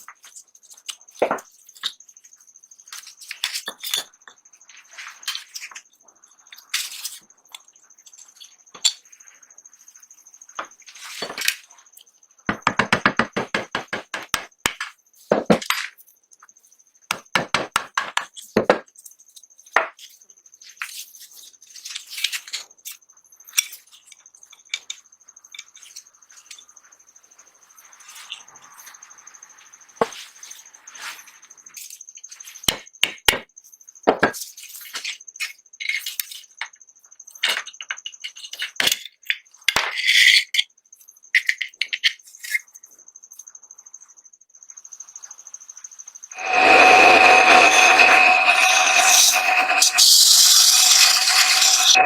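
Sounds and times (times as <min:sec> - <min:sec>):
faint high whine: 0:46.4 - 0:52.0.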